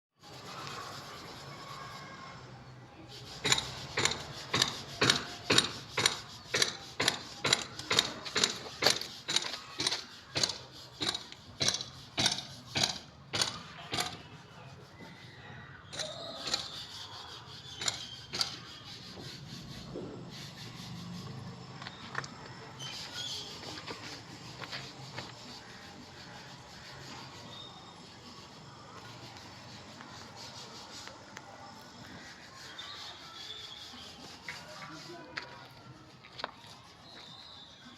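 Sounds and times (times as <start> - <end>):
hand tool rasping: 3.1 - 14.8, 15.9 - 31.1.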